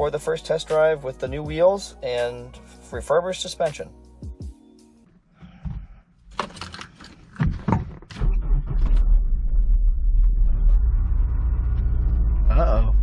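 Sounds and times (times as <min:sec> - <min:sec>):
clicks and knocks in car: 0:05.4 - 0:08.3
car engine starting and idling: 0:06.2 - 0:13.0.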